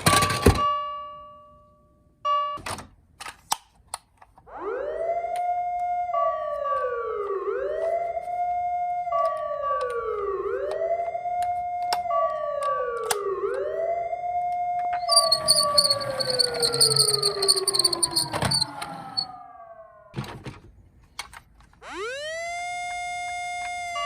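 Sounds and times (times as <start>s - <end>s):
toy siren wailing: 4.5s - 20.2s, 21.8s - 24.0s
toy clicks: 15.1s - 18.6s.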